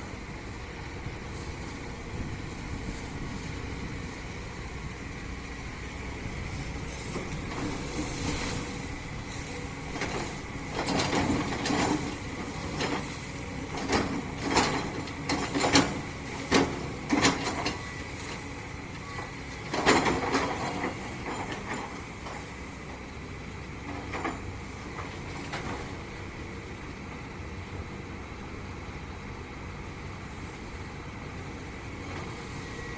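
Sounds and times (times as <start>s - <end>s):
excavator engine rumbling: 0.0s - 32.9s
metallic clanks and knocks: 10.0s - 17.9s, 19.7s - 22.6s.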